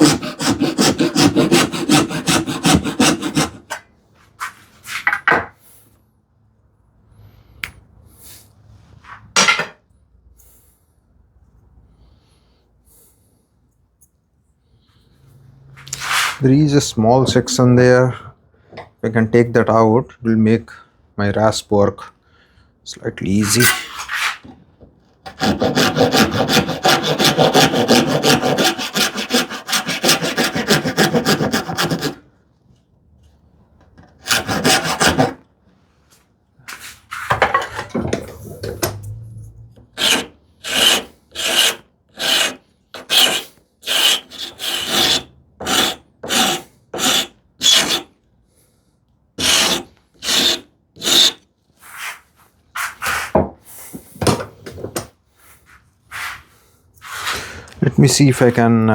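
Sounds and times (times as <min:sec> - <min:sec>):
rasp filing wood: 0:00.0 - 0:03.8, 0:25.3 - 0:32.2, 0:34.1 - 0:35.4, 0:40.0 - 0:48.1, 0:49.4 - 0:51.4.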